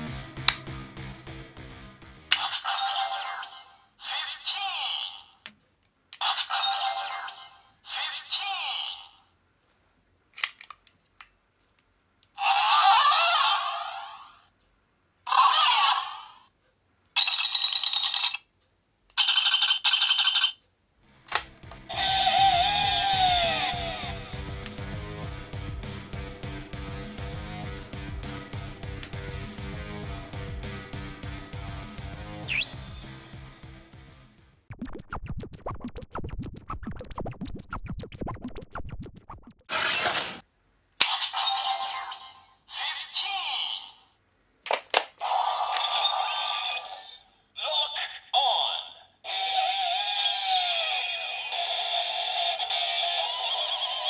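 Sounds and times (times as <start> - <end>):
electronic toy clicks and blips: 19.1 - 20.6, 32.5 - 34.0
sharp electronic swish: 32.5 - 33.4
ringing tone-like bursts: 32.5 - 34.0
toy electronic chime: 32.5 - 34.0.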